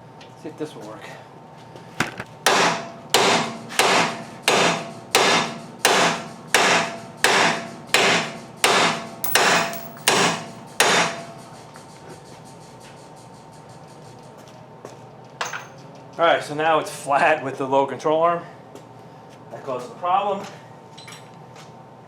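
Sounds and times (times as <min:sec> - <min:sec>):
hammer blows on steel: 0:02.5 - 0:11.3.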